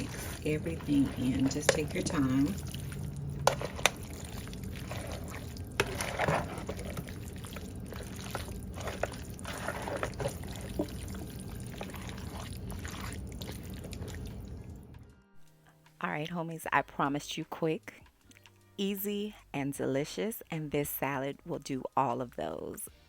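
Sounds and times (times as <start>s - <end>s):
pasta salad squelching in bowl: 0.0s - 14.8s.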